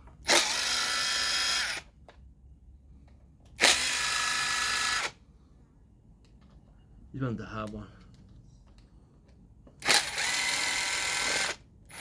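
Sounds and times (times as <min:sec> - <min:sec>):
power drill spinning: 0:00.2 - 0:01.9, 0:03.6 - 0:05.2, 0:09.8 - 0:12.0.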